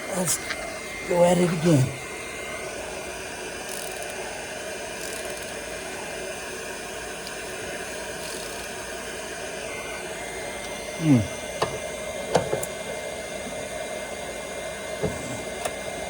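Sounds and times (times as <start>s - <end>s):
faint high whine: 0.0s - 8.7s
cooling fan hiss: 0.0s - 16.0s.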